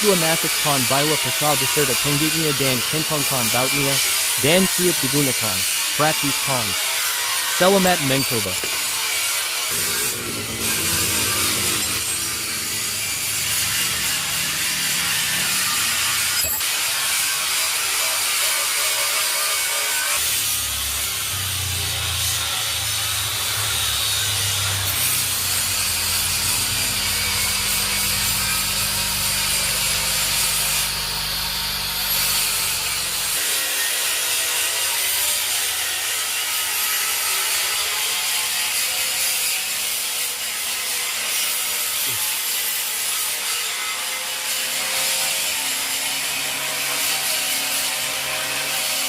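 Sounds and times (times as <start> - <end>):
low hum: 9.7 - 16.4, 24.8 - 33.4
motor blade chopping grass: 23.9 - 33.4.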